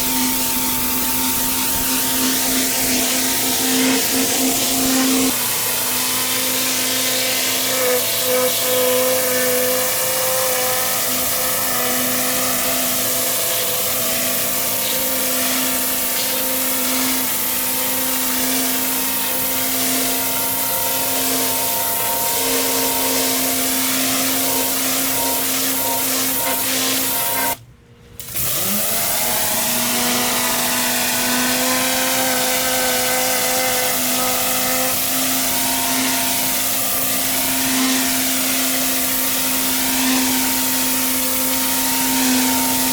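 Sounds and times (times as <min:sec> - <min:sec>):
water jet spraying and hissing: 0:00.0 - 0:05.4, 0:06.3 - 0:27.6
pressure washer running: 0:00.0 - 0:10.2, 0:10.8 - 0:27.6, 0:33.9 - 0:42.9.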